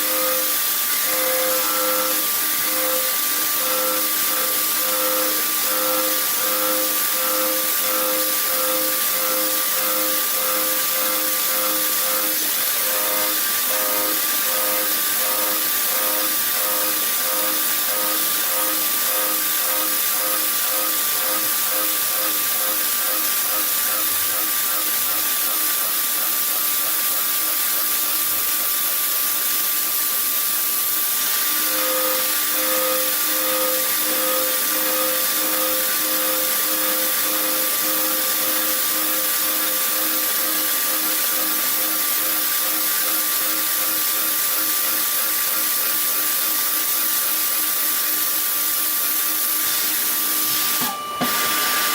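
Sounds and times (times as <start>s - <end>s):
machine hiss and whine: 0.0s - 51.9s.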